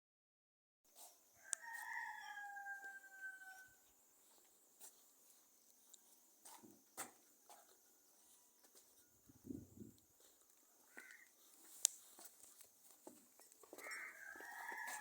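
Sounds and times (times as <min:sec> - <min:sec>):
faint clicks: 0:09.9 - 0:12.7.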